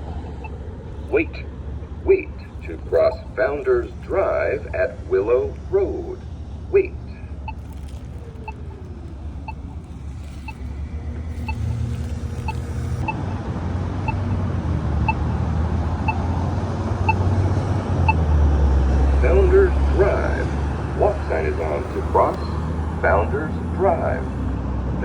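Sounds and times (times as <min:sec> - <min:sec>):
road traffic rumbling: 0:00.0 - 0:25.0
pedestrian signal ticking: 0:08.4 - 0:14.4, 0:15.0 - 0:18.3, 0:19.0 - 0:24.4.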